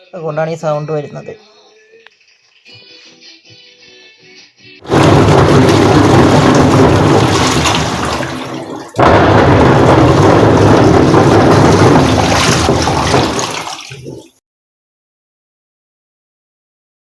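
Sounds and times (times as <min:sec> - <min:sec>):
loud mechanical rumble: 0:04.9 - 0:08.4
washing machine water churning: 0:04.9 - 0:14.4.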